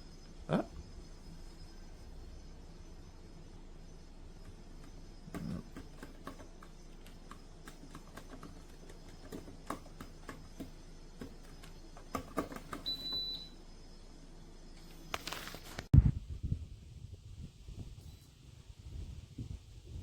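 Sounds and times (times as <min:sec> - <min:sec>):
plastic fan parts clicking: 0:04.4 - 0:12.9.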